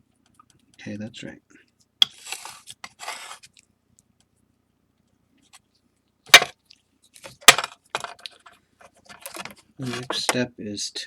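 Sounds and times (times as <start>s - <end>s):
hard objects clicking and scraping: 7.2s - 10.3s.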